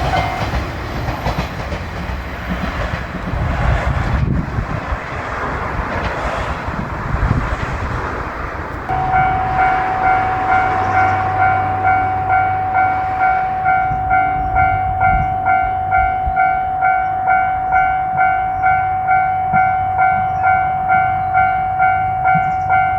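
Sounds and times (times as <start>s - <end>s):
level crossing warning bell: 0.0s - 0.6s, 8.9s - 22.9s
train rumbling past: 0.0s - 22.9s.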